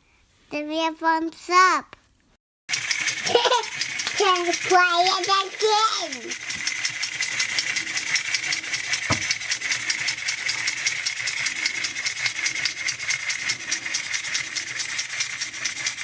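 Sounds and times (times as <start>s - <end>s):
toy motor whine with clicking: 2.7s - 16.0s
thump: 9.1s - 9.3s.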